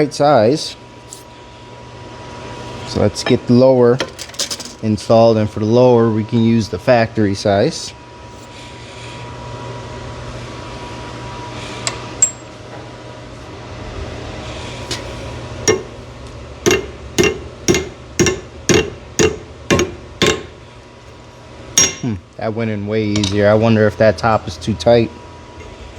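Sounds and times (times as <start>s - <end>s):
hammer striking metal bushing: 15.7s - 16.0s, 16.6s - 20.6s, 21.8s - 22.2s.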